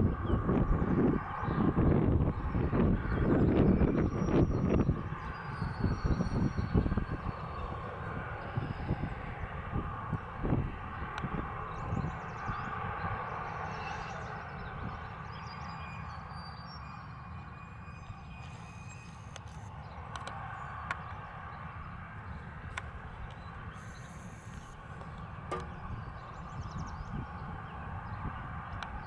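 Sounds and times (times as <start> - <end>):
wind buffeting microphone: 0.0 - 16.2, 17.0 - 29.0
jet engine roar: 17.9 - 28.3.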